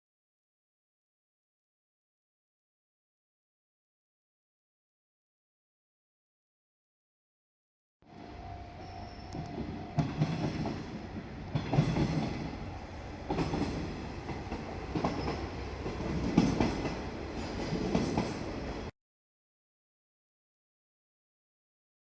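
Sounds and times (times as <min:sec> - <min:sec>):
train engine rumble: 0:08.1 - 0:18.9
train wheels knocking over rail joints: 0:09.4 - 0:18.9.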